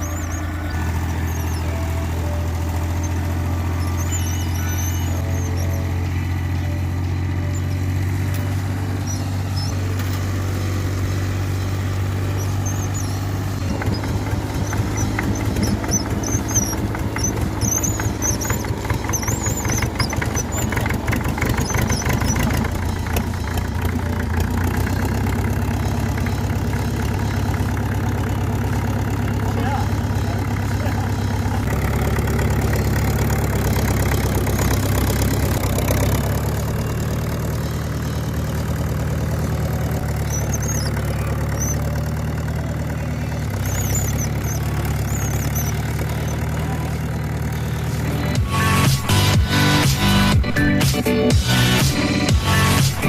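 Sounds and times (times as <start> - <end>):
engine idling and revving: 0.0 - 53.0.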